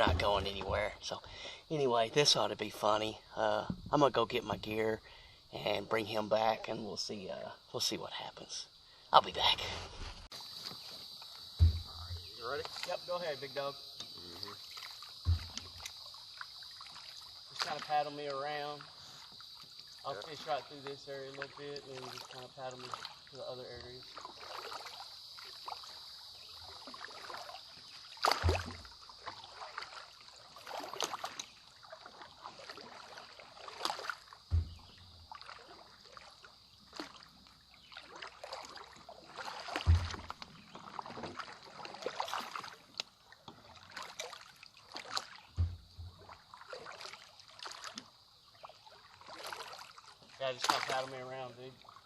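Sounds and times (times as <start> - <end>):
heavy knock on boat: 0.0 - 1.0, 11.6 - 12.4, 15.2 - 15.7, 34.5 - 34.9, 39.8 - 40.3, 45.6 - 46.2
paddles splashing in water: 0.0 - 7.3, 9.3 - 52.0.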